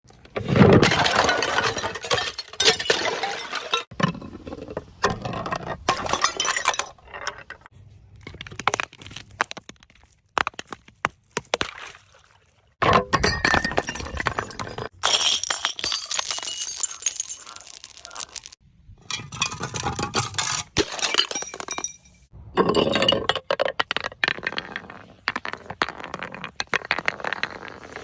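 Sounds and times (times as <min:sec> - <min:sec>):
glass bottles smashing: 0:00.7 - 0:03.9, 0:05.9 - 0:07.0, 0:12.8 - 0:18.6, 0:19.2 - 0:23.5
glass shards tinkling: 0:13.4 - 0:18.6.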